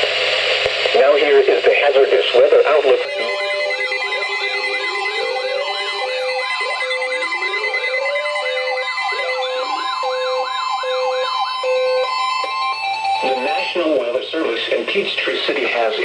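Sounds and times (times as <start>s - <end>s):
steady electronic tone: 1.7s - 14.4s
warbling electronic alarm: 1.7s - 14.4s
rising electronic wails: 3.0s - 14.0s.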